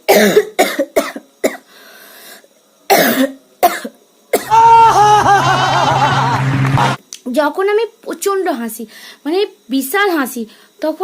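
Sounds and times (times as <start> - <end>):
woman coughing: 0.1 - 1.6, 2.9 - 4.5.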